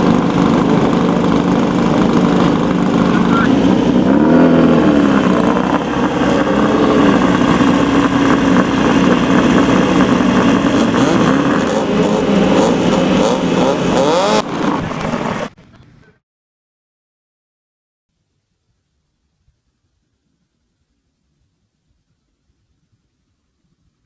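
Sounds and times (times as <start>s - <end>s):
loud rushing noise: 0.0s - 15.6s
race vehicle engines revving: 0.0s - 16.0s.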